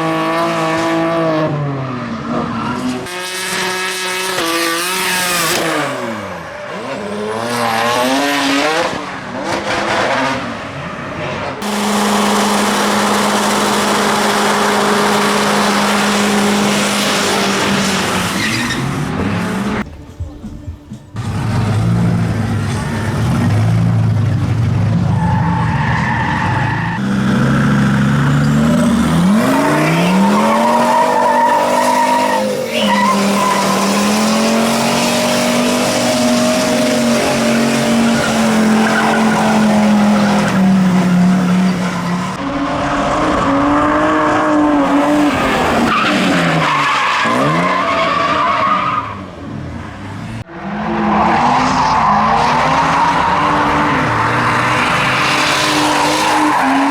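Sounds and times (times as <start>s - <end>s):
car engine revving hard: 11.6s - 19.8s, 27.0s - 49.1s, 50.4s - 56.9s
tyres squealing: 28.3s - 40.6s.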